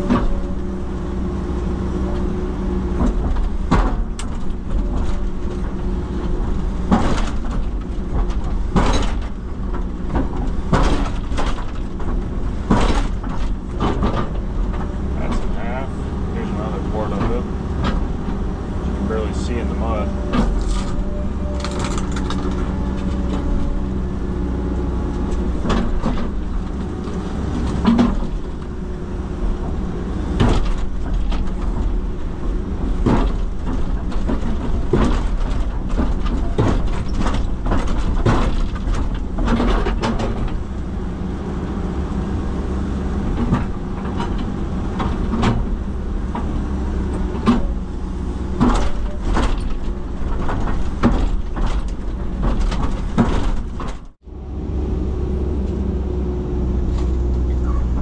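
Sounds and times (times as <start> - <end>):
excavator diesel engine running: 0.0 - 58.0.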